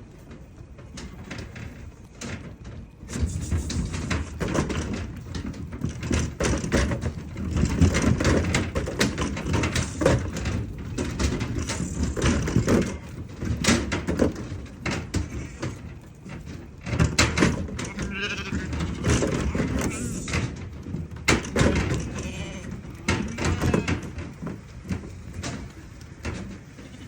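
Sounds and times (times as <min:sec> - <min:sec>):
metal trailer gates clattering: 0:00.9 - 0:27.0.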